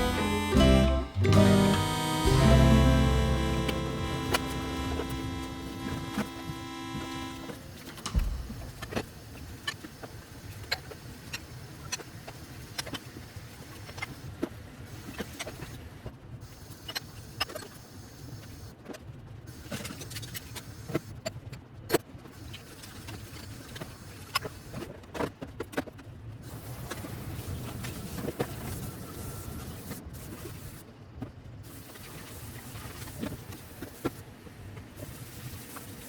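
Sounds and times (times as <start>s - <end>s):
steady low hum: 0.0s - 9.2s.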